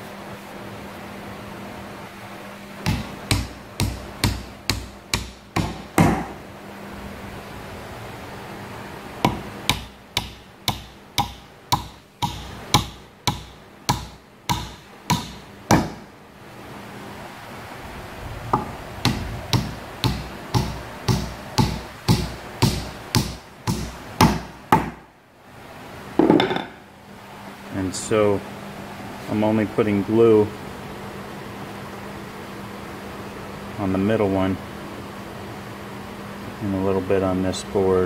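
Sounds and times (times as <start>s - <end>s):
hammer tapping on wood: 2.8s - 6.4s, 9.2s - 16.0s, 18.5s - 25.0s, 26.2s - 26.8s.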